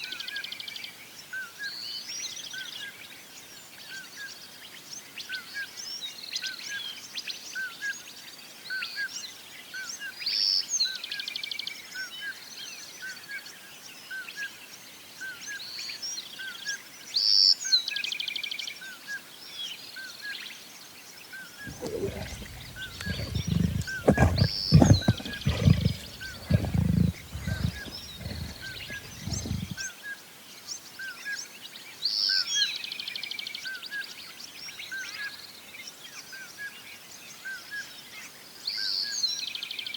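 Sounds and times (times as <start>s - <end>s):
birdsong: 21.7s - 29.8s
lion roaring: 21.7s - 29.8s.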